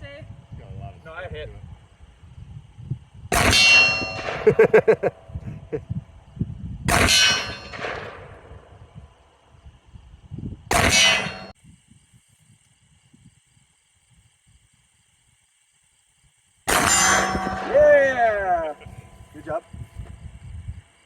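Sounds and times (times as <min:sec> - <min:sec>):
bullets striking steel target: 0:03.3 - 0:04.8, 0:06.9 - 0:08.8, 0:10.7 - 0:11.6, 0:16.7 - 0:19.6.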